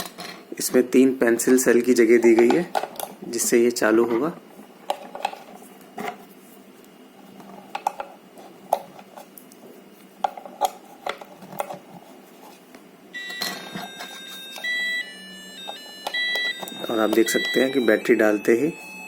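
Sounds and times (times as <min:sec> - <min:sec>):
electronic beeping tune: 0:13.2 - 0:19.0.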